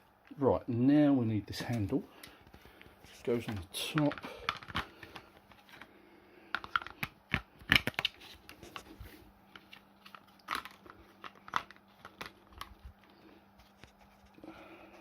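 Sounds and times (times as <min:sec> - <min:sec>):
plastic vacuum parts clicking: 0:03.4 - 0:05.9, 0:06.5 - 0:08.8.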